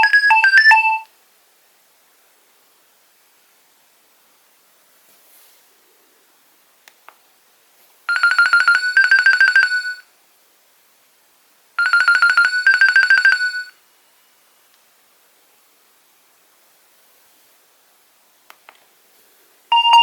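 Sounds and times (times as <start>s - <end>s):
phone ringtone trilled beeps: 0.0s - 1.0s, 8.1s - 10.0s, 11.8s - 13.8s, 19.7s - 20.0s.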